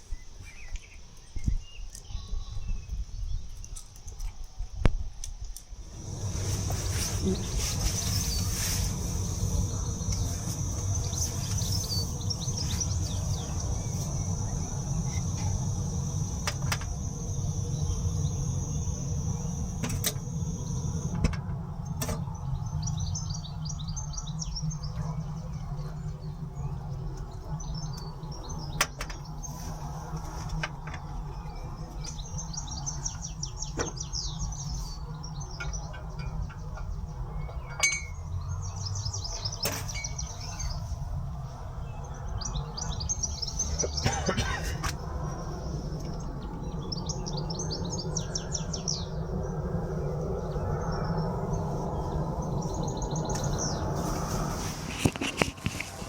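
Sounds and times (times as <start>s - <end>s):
small birds chirping: 0.0s - 4.3s, 5.9s - 56.0s
low rumble: 5.9s - 30.1s
steady high tone: 6.0s - 21.2s.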